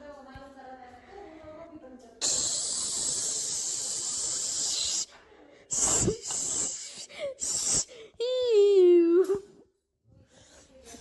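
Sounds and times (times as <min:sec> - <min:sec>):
hissing: 0:02.2 - 0:05.1, 0:05.7 - 0:08.0.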